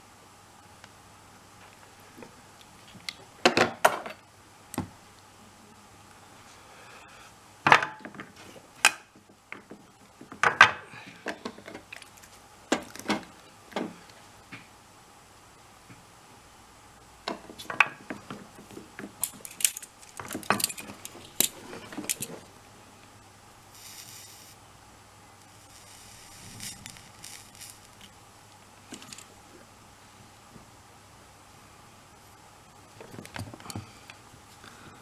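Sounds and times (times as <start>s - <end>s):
small metal parts clicking: 19.2s - 22.4s, 26.6s - 28.1s
brief hiss: 23.7s - 24.6s, 25.6s - 27.9s.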